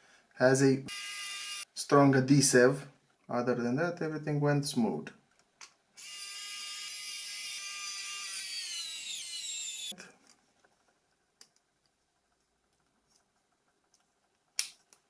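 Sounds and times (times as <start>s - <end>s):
small electric tool motor whining: 0.9s - 1.7s, 6.0s - 10.0s.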